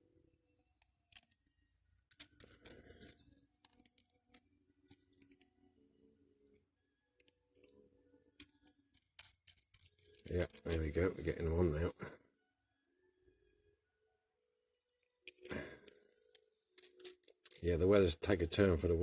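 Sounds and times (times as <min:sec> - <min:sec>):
small clicks and rustles of handling: 0:00.3 - 0:05.8, 0:06.5 - 0:11.4, 0:15.0 - 0:18.0.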